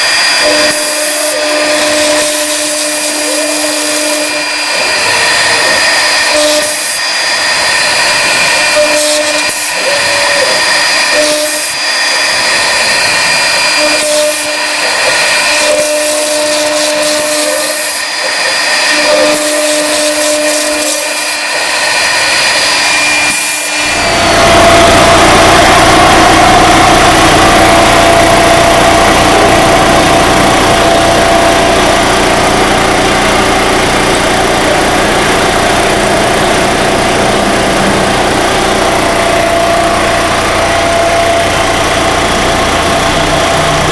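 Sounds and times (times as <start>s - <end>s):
router spindle whining: 0.0s - 43.9s.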